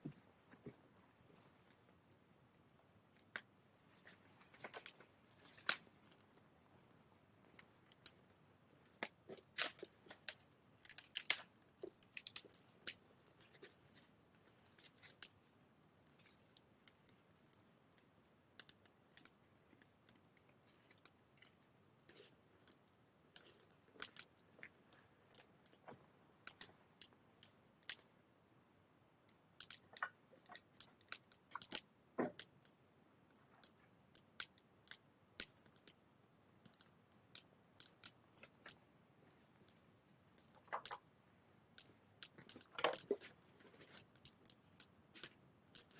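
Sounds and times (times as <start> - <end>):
wood fire crackling: 0.0 - 28.1.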